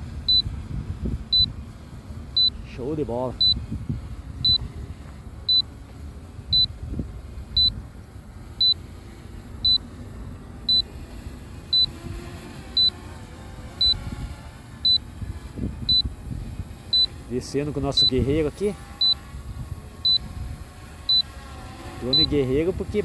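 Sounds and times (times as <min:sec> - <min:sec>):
wind rumbling on microphone: 0:00.0 - 0:23.0
short electronic beeps: 0:00.3 - 0:00.5, 0:01.3 - 0:01.5, 0:02.4 - 0:02.6, 0:03.4 - 0:03.6, 0:04.4 - 0:04.7, 0:05.5 - 0:05.7, 0:06.5 - 0:06.7, 0:07.6 - 0:07.8, 0:08.6 - 0:08.8, 0:09.6 - 0:09.8, 0:10.7 - 0:10.9, 0:11.7 - 0:12.0, 0:12.8 - 0:13.0, 0:13.8 - 0:14.0, 0:14.8 - 0:15.0, 0:15.9 - 0:16.1, 0:16.9 - 0:17.2, 0:19.0 - 0:19.3, 0:20.0 - 0:20.2, 0:21.1 - 0:21.3, 0:22.1 - 0:22.3.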